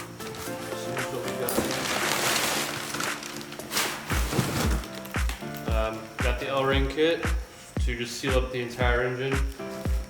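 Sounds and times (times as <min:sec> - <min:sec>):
background music with beat: 0:00.0 - 0:10.0
deep kick drum thumps: 0:04.1 - 0:10.0.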